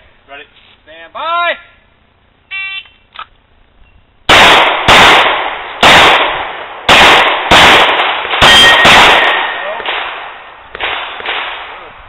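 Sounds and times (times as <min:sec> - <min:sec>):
pistol shots echoing: 0:04.3 - 0:11.9.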